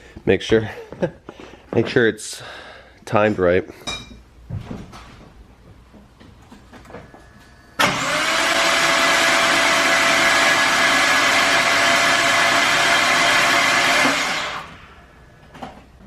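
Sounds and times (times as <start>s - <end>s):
engine starter whirring: 7.7s - 15.3s.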